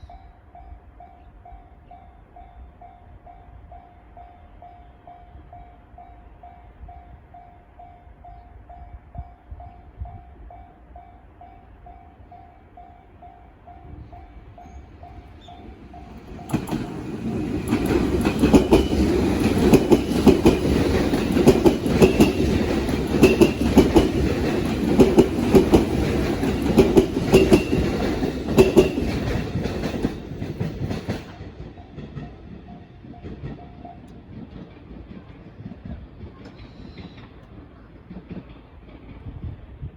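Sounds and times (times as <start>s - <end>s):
train wheels clattering over rail joints: 15.8s - 39.5s.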